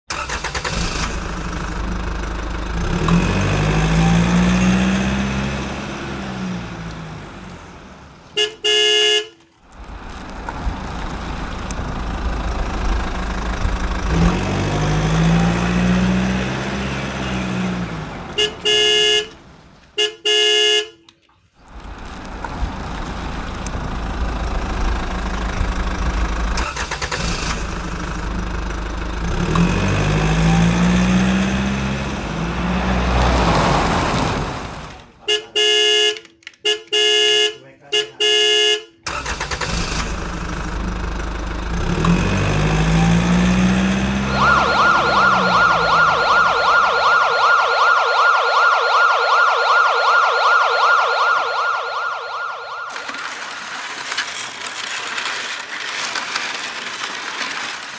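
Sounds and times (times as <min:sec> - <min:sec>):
truck engine revving: 0:00.0 - 0:08.7, 0:09.7 - 0:20.0, 0:21.6 - 0:35.7, 0:39.0 - 0:57.9
truck horn honks: 0:08.4 - 0:09.5, 0:18.3 - 0:19.4, 0:20.0 - 0:21.2, 0:35.2 - 0:39.3.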